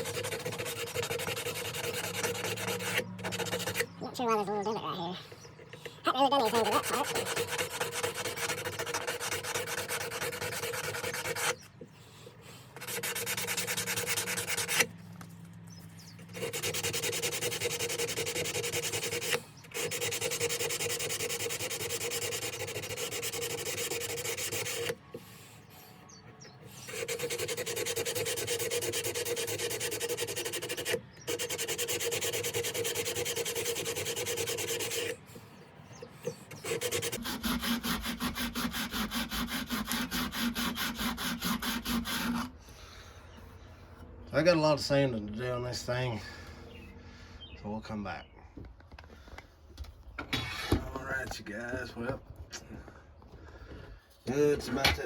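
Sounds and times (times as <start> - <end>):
sanding on steel blade: 0.0 - 4.3, 5.9 - 11.7, 12.6 - 15.0, 15.8 - 35.3, 35.9 - 42.6.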